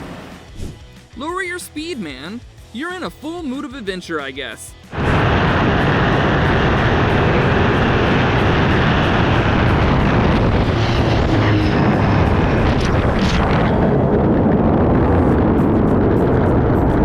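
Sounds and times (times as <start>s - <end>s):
boat engine drone: 4.9s - 17.0s
wind and water rushing: 4.9s - 17.0s.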